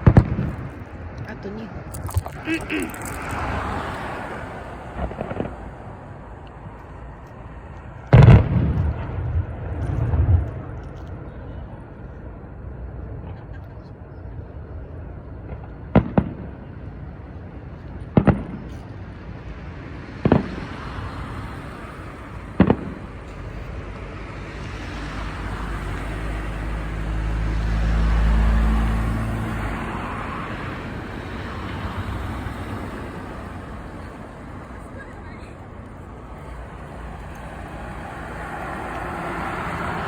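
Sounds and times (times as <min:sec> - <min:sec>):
sharp double-crack bangs: 0:00.0 - 0:03.8, 0:04.8 - 0:06.1, 0:08.1 - 0:10.8, 0:20.2 - 0:20.8, 0:22.6 - 0:23.5
road vehicle engine passing: 0:00.0 - 0:18.3, 0:18.9 - 0:40.0.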